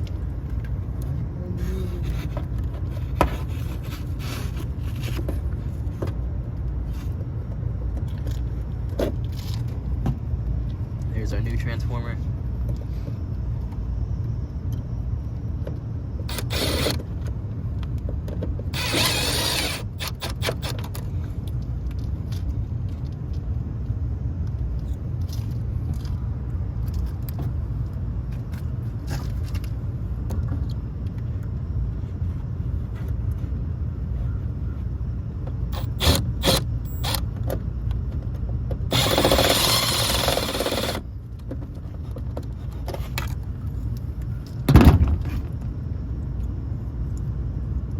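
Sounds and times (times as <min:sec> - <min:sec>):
steady low rumble: 0:00.0 - 0:47.9
sharp metal clicks: 0:16.3 - 0:17.0, 0:18.8 - 0:20.9, 0:35.8 - 0:37.2
tools scraping metal parts: 0:16.3 - 0:17.0, 0:18.8 - 0:20.9, 0:35.8 - 0:37.2.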